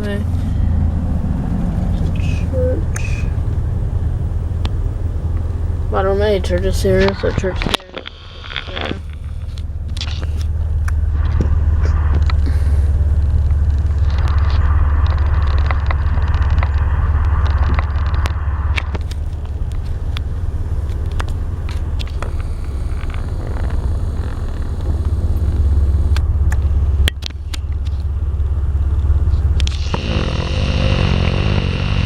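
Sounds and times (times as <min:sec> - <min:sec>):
car road and engine rumble: 0:00.0 - 0:32.0
small clicks: 0:18.8 - 0:26.6.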